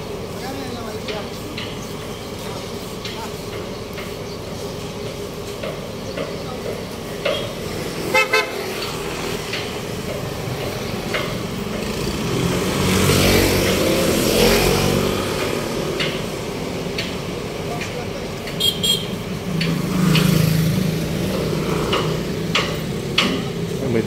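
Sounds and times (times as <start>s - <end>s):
passing vehicle engine: 7.6s - 24.0s
vehicle horn tooting: 8.1s - 8.7s, 18.6s - 19.2s.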